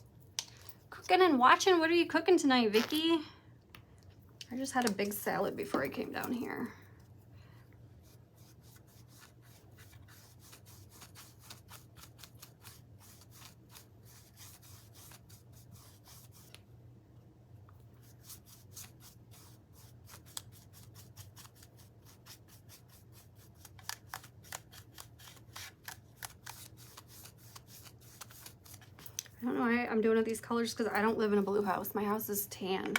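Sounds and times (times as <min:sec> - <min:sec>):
paintbrush strokes: 0:08.0 - 0:16.6.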